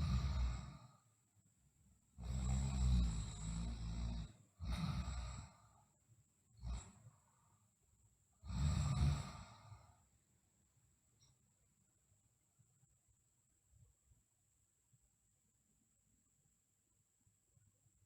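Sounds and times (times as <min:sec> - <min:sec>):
girl snoring: 0:00.0 - 0:01.0, 0:02.2 - 0:05.8, 0:06.6 - 0:07.0, 0:08.4 - 0:10.0.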